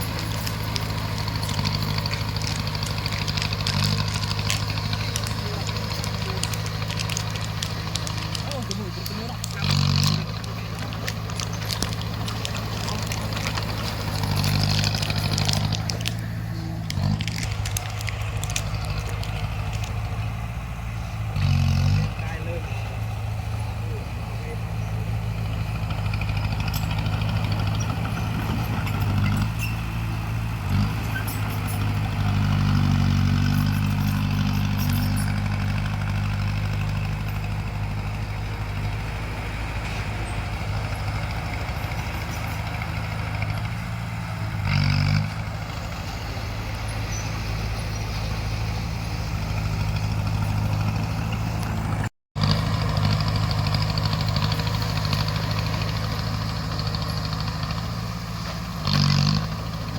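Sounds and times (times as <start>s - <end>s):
bulldozer diesel engine running: 0.0s - 59.9s
metal clanks: 25.9s - 37.5s.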